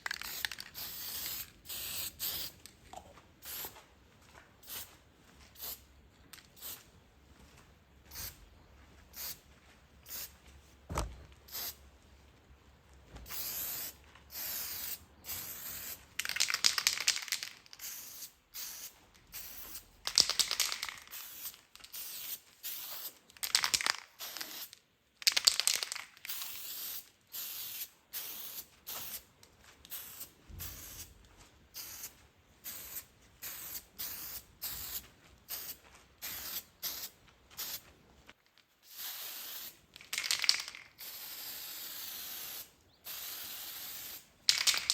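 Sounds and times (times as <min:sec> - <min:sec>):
spray paint can hissing: 0:00.0 - 0:02.6, 0:03.4 - 0:03.8, 0:04.6 - 0:04.9, 0:05.6 - 0:05.8, 0:06.4 - 0:06.8, 0:08.1 - 0:08.4, 0:09.1 - 0:09.4, 0:10.0 - 0:10.3, 0:11.5 - 0:11.8, 0:13.2 - 0:29.3, 0:29.9 - 0:31.1, 0:31.8 - 0:37.8, 0:38.8 - 0:44.9.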